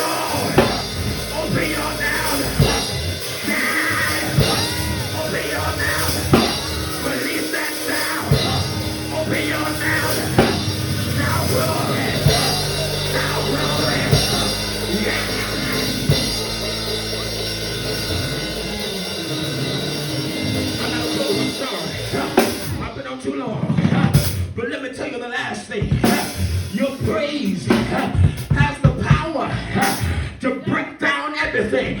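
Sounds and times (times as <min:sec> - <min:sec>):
low bass notes: 0:00.0 - 0:23.0
voices calling out: 0:00.0 - 0:24.3
drum kit playing hard: 0:00.0 - 0:24.6, 0:25.8 - 0:29.2.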